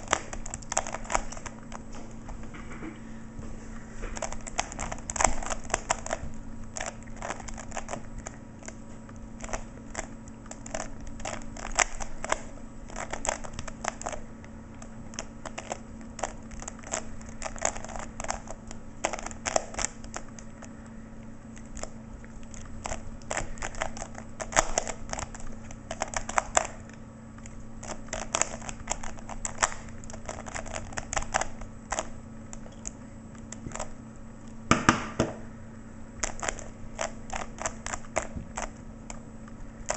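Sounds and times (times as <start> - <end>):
puzzle cube plastic clicks: 27.8 - 33.9.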